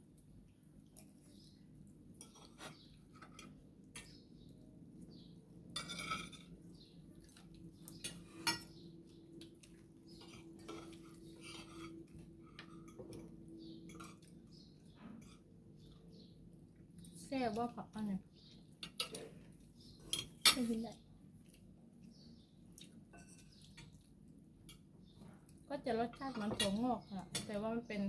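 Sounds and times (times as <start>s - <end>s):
cutlery clinking on plates: 2.2s - 4.2s, 5.7s - 6.6s, 7.9s - 8.8s, 18.8s - 19.4s, 23.1s - 24.0s.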